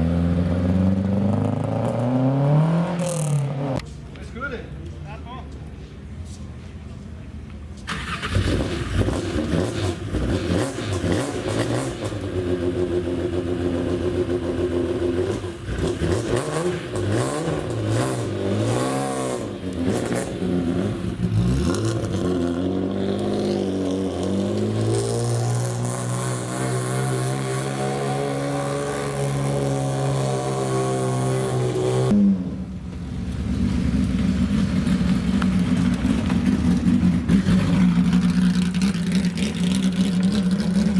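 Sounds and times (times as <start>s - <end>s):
second race car engine: 7.8s - 40.9s
race car engine revving: 7.9s - 32.6s, 33.4s - 40.9s.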